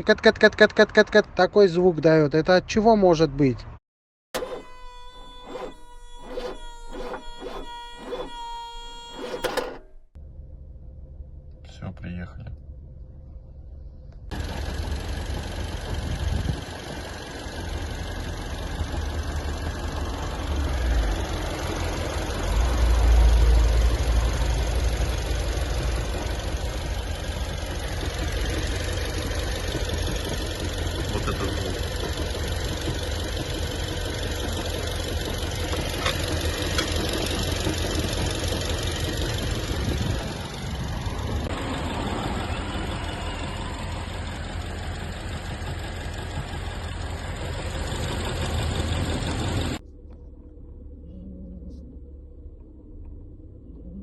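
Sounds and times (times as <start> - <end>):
car engine low rumble: 4.4 - 54.0
engine knocking: 14.3 - 49.8.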